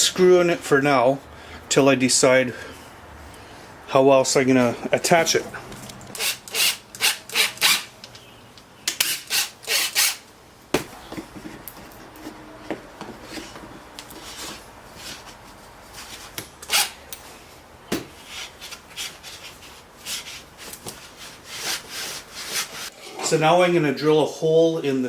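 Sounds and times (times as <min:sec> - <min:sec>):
scraping strokes on wood: 0:11.3 - 0:17.5, 0:18.1 - 0:23.0.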